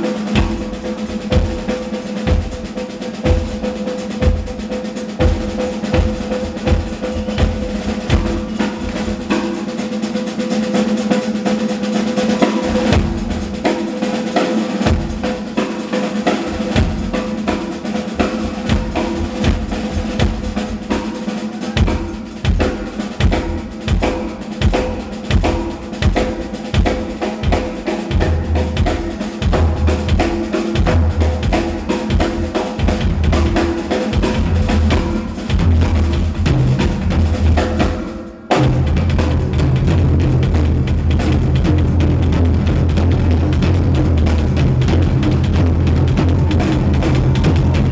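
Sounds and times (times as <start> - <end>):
snare drum rolls: 0.0 - 47.9
bass drum beats: 21.6 - 37.9, 38.5 - 47.9.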